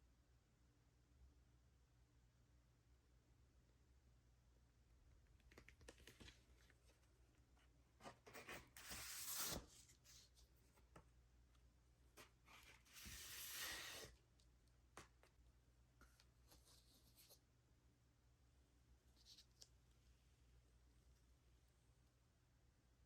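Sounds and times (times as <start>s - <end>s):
packaging rustling and sliding: 12.5s - 14.1s.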